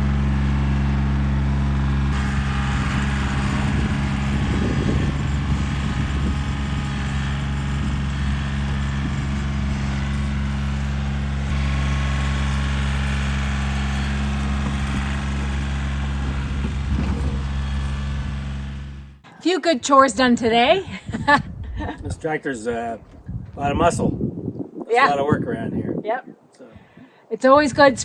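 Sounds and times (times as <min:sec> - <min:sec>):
tractor diesel engine running: 0:00.0 - 0:21.4.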